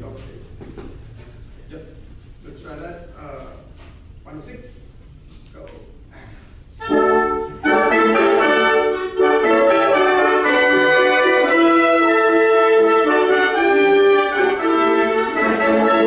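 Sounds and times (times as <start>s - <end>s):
trumpet section playing: 6.8s - 16.0s.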